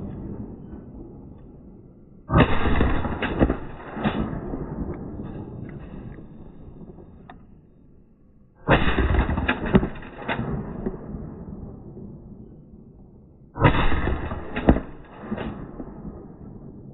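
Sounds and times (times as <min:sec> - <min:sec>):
shotgun shots: 0:02.3 - 0:06.8, 0:08.7 - 0:11.1, 0:13.6 - 0:16.4.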